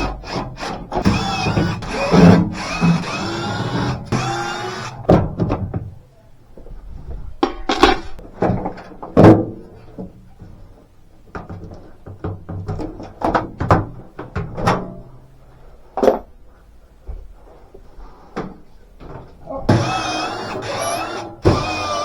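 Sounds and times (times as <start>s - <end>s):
hard parts knocking and clunking: 0.0s - 5.9s, 19.7s - 22.0s.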